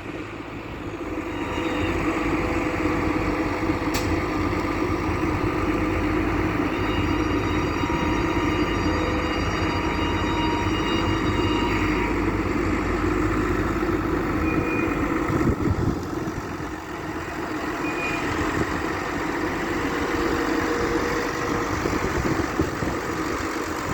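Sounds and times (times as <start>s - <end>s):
diesel engine running: 0.0s - 23.9s.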